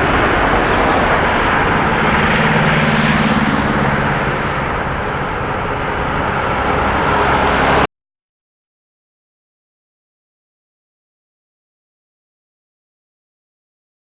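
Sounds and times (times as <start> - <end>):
jet engine roar: 0.0 - 7.9.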